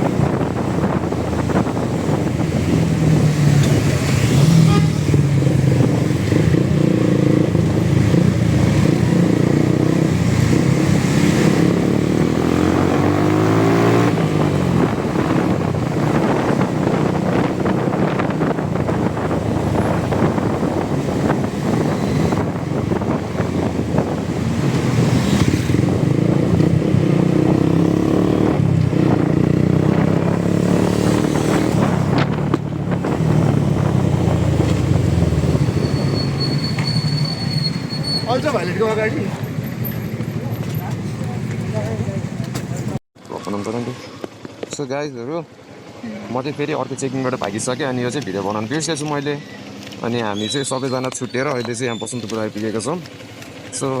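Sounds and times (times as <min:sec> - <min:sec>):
motorcycle engine running: 0:00.0 - 0:43.0.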